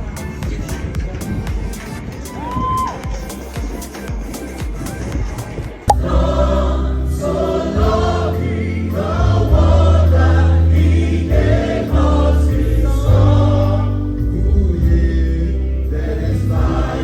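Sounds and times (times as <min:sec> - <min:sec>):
gospel choir singing: 0:05.9 - 0:17.0.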